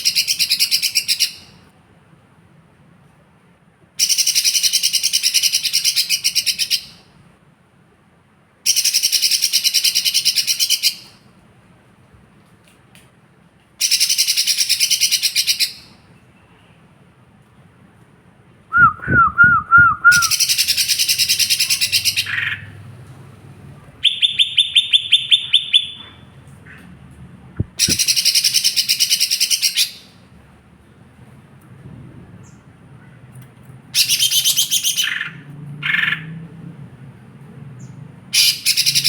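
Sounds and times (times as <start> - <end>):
bird whistled notes: 18.7 - 22.4.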